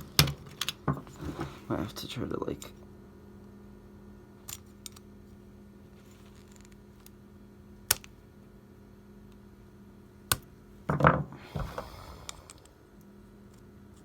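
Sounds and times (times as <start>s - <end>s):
scraping and clattering of toy parts: 6.0s - 6.8s.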